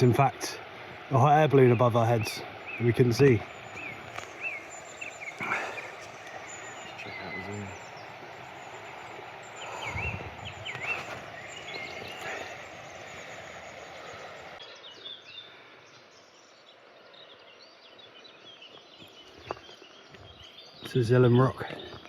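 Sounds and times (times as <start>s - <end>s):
rushing outdoor background: 0.0s - 14.6s
small birds chirping: 0.0s - 22.0s.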